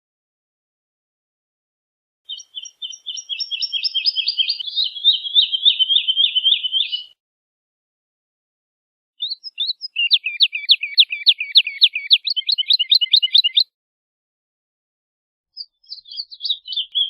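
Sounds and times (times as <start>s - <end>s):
woodlark singing: 2.3s - 7.2s, 9.2s - 13.7s, 15.6s - 17.0s.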